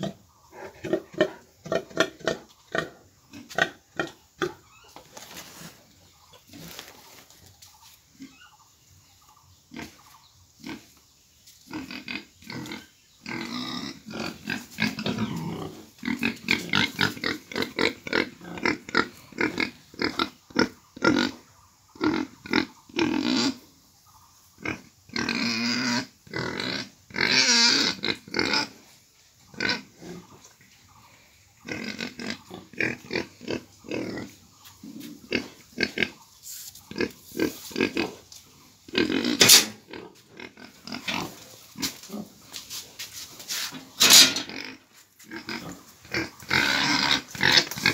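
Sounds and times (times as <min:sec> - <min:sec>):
pigs grunting: 0:00.0 - 0:04.6, 0:11.7 - 0:21.4, 0:22.0 - 0:23.6, 0:24.6 - 0:28.8, 0:29.5 - 0:30.6, 0:31.6 - 0:36.3, 0:36.9 - 0:42.5, 0:43.7 - 0:47.9
pigs shrill calls: 0:22.0 - 0:23.6, 0:24.6 - 0:28.7, 0:43.9 - 0:47.9.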